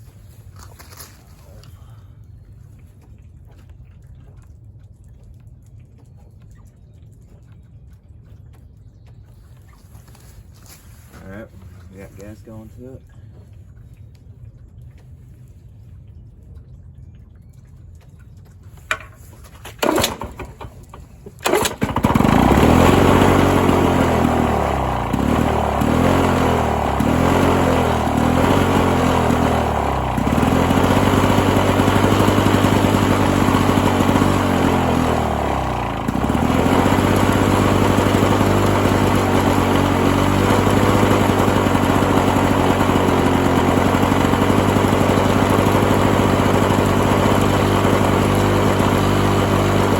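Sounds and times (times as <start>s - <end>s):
mower starter cord pulls: 18.9s - 49.9s
push mower engine running unevenly: 18.9s - 49.9s.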